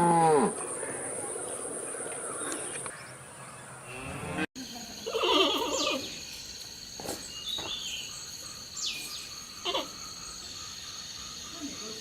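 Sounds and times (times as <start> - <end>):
high-pitched insect trilling: 4.6 - 12.0.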